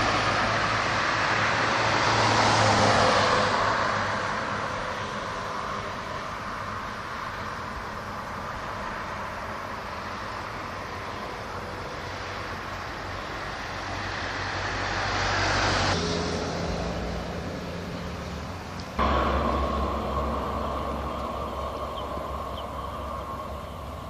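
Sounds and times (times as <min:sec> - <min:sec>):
road vehicle rushing hum: 0:00.0 - 0:24.0
quieter steady hum: 0:18.8 - 0:24.0.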